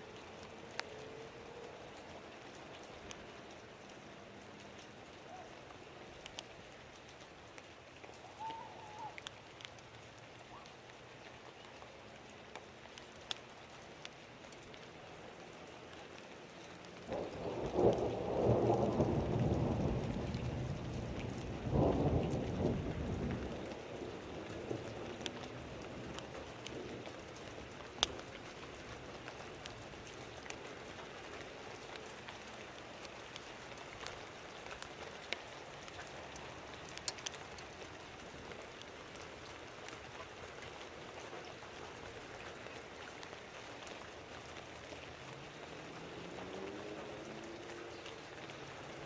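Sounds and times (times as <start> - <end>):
steady rain falling: 0.0 - 49.0
sharp drip clicks: 0.1 - 49.0
thunder rumble: 17.1 - 27.6.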